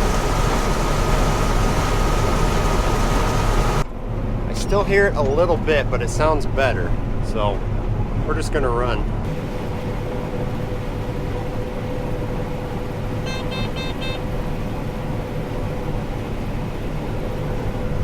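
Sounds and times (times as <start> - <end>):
thin steady whine: 0.0 - 3.8
combine harvester running: 0.0 - 18.0.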